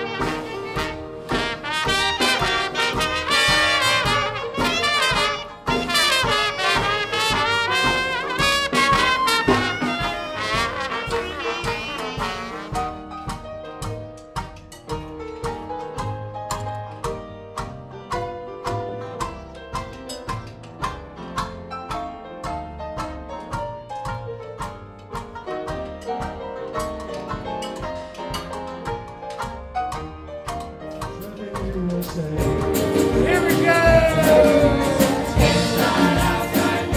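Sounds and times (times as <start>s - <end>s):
trumpet and trombone: 0.0s - 13.3s, 32.8s - 36.9s
jazz band playing: 0.0s - 36.9s
plucked rhythm: 0.0s - 36.9s.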